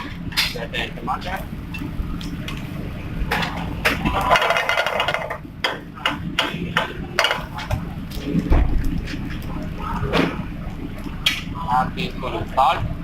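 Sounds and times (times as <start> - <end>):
dull thump: 7.7 - 8.9.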